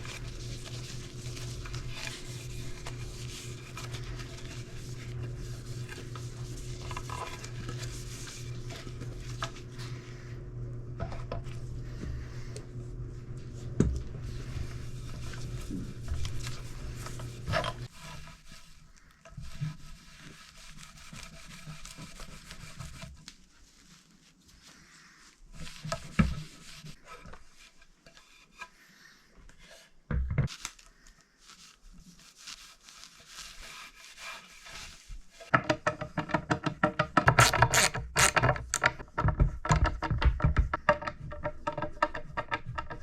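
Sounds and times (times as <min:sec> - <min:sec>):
cloth rubbing wooden board: 0:00.0 - 0:10.3.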